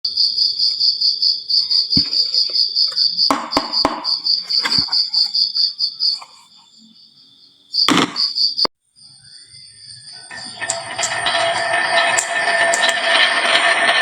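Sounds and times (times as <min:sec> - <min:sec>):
high pulsing chirping: 0:00.4 - 0:11.2.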